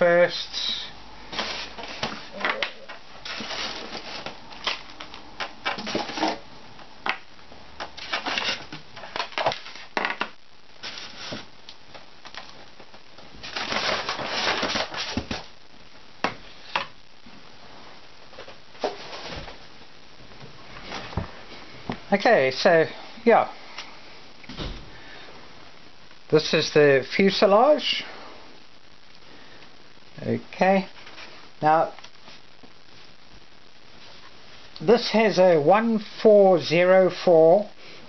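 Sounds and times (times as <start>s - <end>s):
packaging crunching and rustling: 1.3s - 6.5s, 7.1s - 15.6s.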